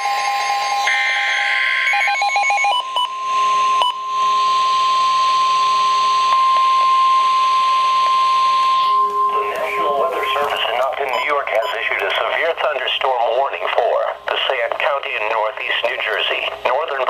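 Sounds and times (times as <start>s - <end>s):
steady warning tone: 0.0s - 12.9s
radio hiss: 9.3s - 17.0s.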